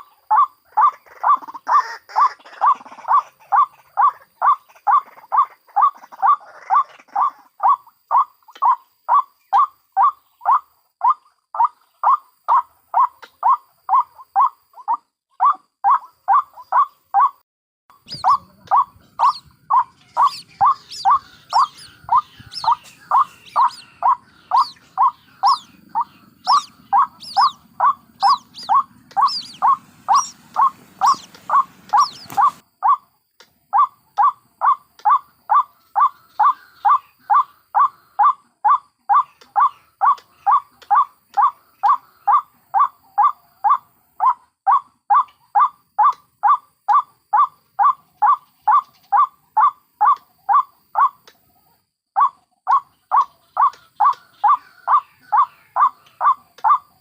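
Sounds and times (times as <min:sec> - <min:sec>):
thin high bird calls: 0:00.0 - 0:33.0, 0:52.2 - 0:57.0
waterhen repeated call: 0:00.0 - 0:33.1, 0:33.8 - 0:51.2, 0:52.2 - 0:57.0.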